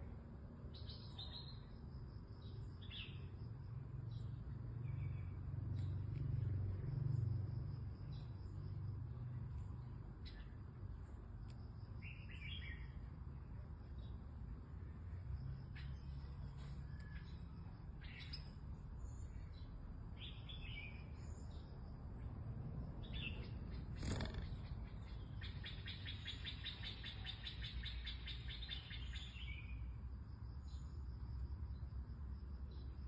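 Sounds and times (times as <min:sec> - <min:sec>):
bird song phrases: 0:00.1 - 0:07.3, 0:08.0 - 0:14.2, 0:14.9 - 0:22.0, 0:23.0 - 0:30.0
sharp click: 0:23.9 - 0:24.7.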